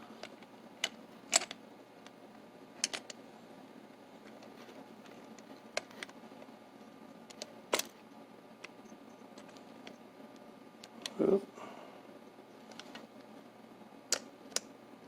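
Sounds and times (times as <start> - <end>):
small metal parts clicking: 2.8 - 3.2.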